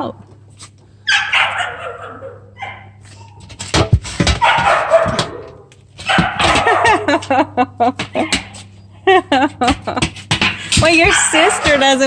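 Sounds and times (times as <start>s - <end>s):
scuffling: 0.4s - 12.0s
high animal cries: 1.0s - 3.6s, 4.4s - 7.1s, 11.0s - 12.0s.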